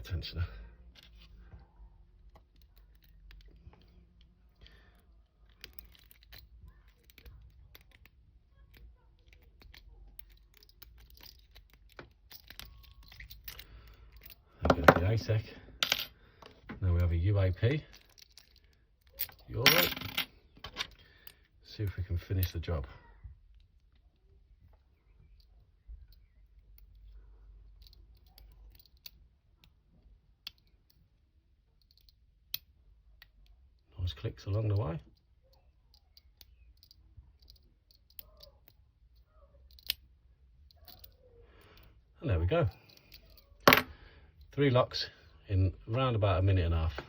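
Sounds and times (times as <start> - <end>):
metallic clicks of lock picking: 2.2 - 14.4, 17.0 - 19.7, 24.7 - 42.0, 42.6 - 43.7.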